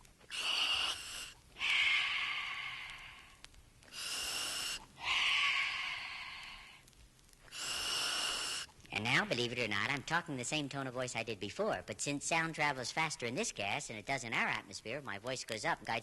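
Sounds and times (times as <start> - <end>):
man breathing deeply: 0.3 - 6.8, 7.4 - 8.7.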